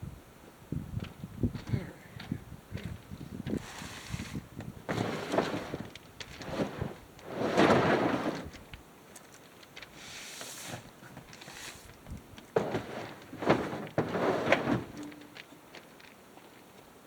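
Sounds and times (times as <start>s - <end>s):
scraping clatters: 3.6s - 16.2s.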